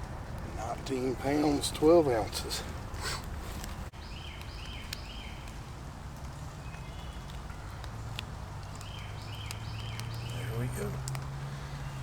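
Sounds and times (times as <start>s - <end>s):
songbird singing: 3.6s - 12.0s.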